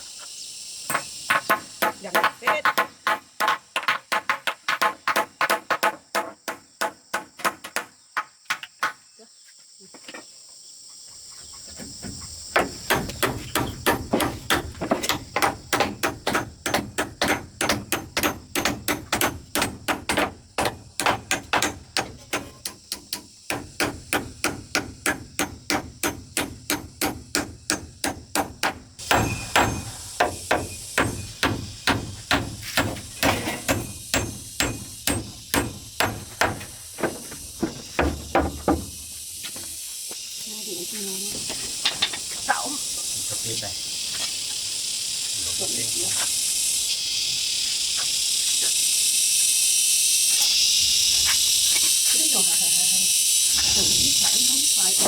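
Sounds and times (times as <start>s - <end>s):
hand tool striking rhythmically: 12.6s - 36.8s.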